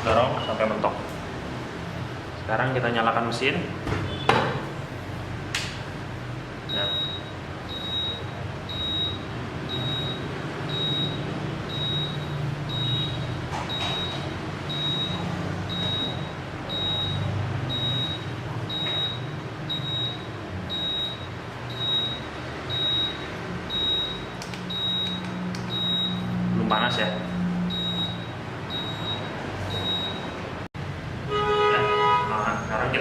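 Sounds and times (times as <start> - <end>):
steam press beeping: 6.7 - 26.3, 27.7 - 30.4.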